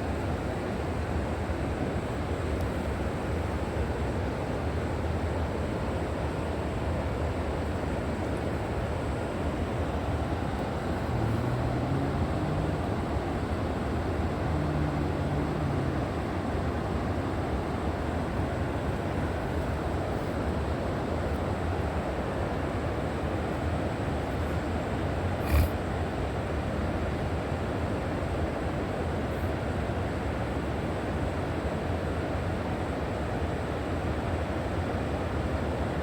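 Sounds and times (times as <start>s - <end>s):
river water rushing: 8.5s - 20.1s
faint low hum: 9.6s - 20.5s.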